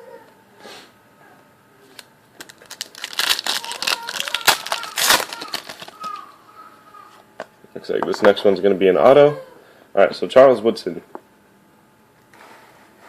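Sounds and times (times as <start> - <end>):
plastic wrapper crinkling: 2.0 - 6.4.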